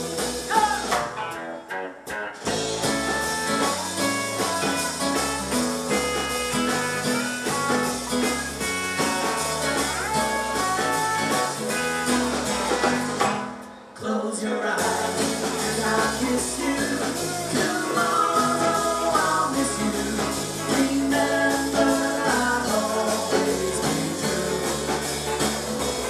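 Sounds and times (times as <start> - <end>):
electric guitar melody: 0.0 - 14.0
walking bass line: 2.4 - 13.5, 14.8 - 26.0.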